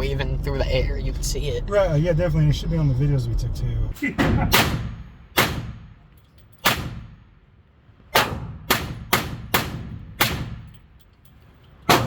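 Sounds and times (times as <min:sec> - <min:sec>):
echoing gunshots: 0:04.4 - 0:06.0.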